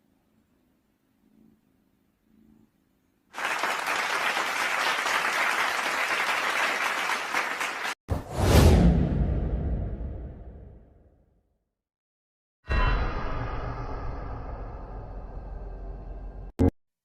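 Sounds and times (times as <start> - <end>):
applause: 3.3 - 8.0
loud deep boom: 8.5 - 11.0.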